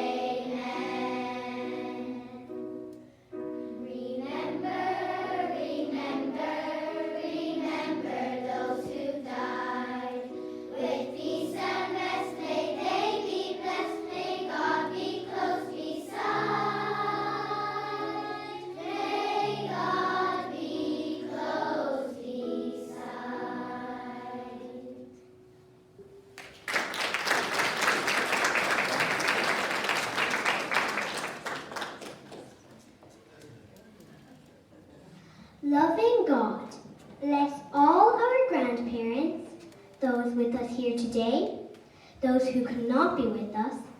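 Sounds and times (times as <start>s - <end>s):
children's choir singing: 0.0s - 2.8s, 3.8s - 25.3s, 26.7s - 32.1s
audience applause: 26.4s - 32.8s.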